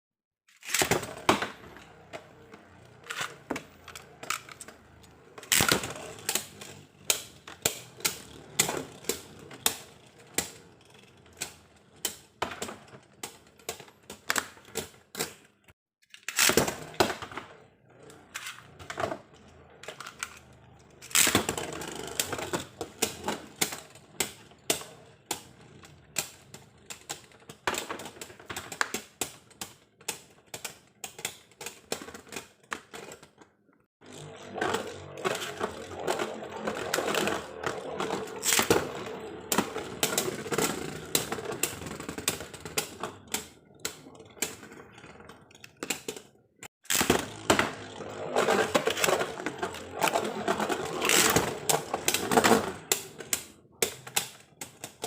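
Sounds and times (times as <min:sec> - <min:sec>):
plastic spinning top parts clicking: 0:01.8 - 0:15.1, 0:34.0 - 0:55.0.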